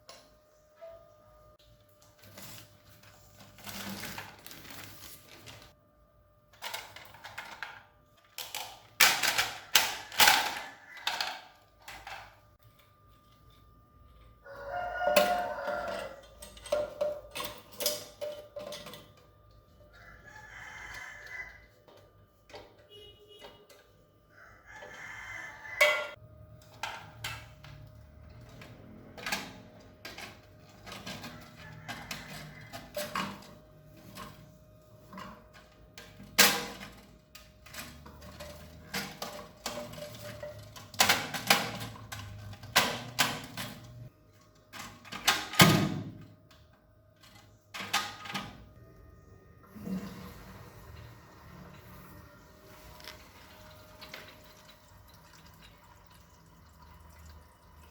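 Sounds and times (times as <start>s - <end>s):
hard objects clicking and knocking: 6.6s - 12.4s
rooster crowing: 14.4s - 16.4s, 19.8s - 21.8s, 24.3s - 26.2s, 31.3s - 33.2s.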